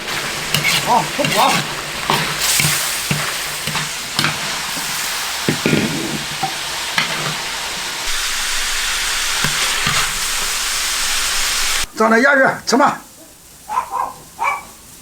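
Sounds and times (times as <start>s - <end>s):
spatula scraping a pan: 0.0s - 11.9s
chicken sizzling in a wok: 0.0s - 13.7s.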